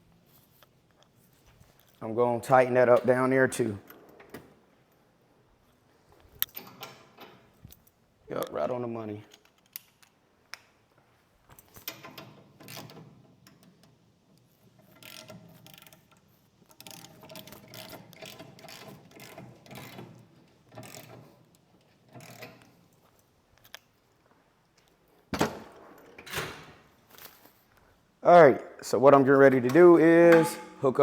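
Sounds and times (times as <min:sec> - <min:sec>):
ratchet clicking: 0:14.8 - 0:21.3, 0:22.1 - 0:22.8.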